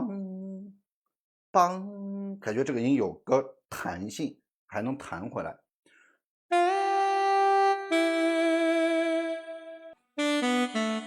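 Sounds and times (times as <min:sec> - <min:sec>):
electronic saxophone melody: 0:06.5 - 0:11.0.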